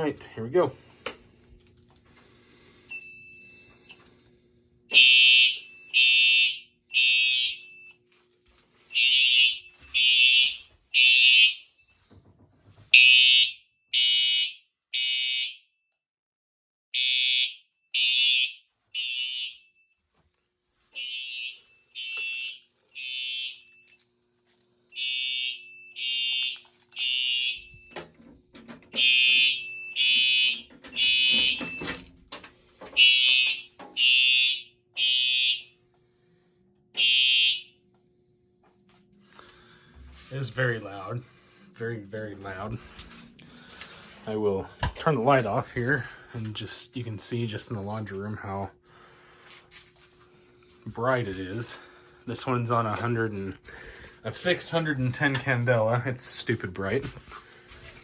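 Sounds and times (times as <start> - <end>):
fire alarm horn blasts: 4.9 - 8.0, 8.8 - 12.0, 12.9 - 15.9, 16.9 - 20.0, 20.9 - 23.9, 24.9 - 28.1, 28.9 - 32.0, 32.9 - 35.9, 36.9 - 38.0.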